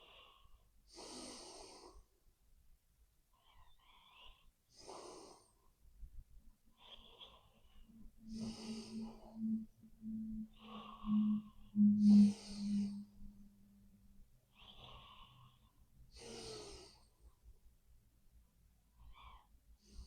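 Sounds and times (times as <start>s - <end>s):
low steady tone: 7.8s - 14.5s.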